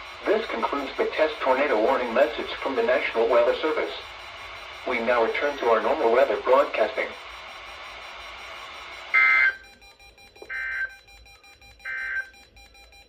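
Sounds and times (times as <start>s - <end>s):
steady radio hiss: 0.0s - 9.6s, 10.2s - 10.9s
buzzy data bursts: 0.0s - 13.0s.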